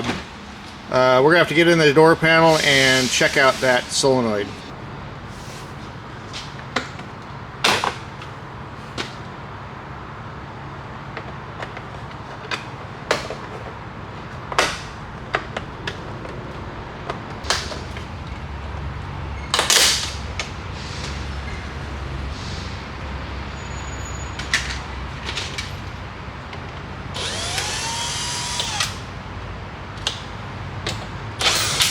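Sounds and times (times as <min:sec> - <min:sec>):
low hum: 0:14.0 - 0:20.6.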